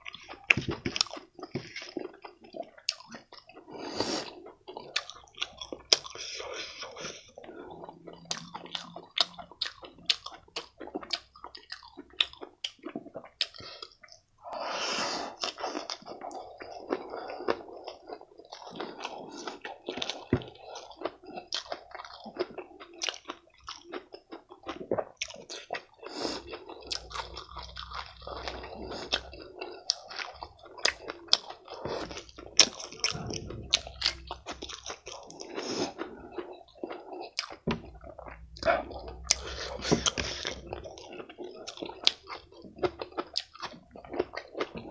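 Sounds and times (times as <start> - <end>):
person chewing food: 0.0 - 44.9
wet mouth sounds: 24.9 - 42.4.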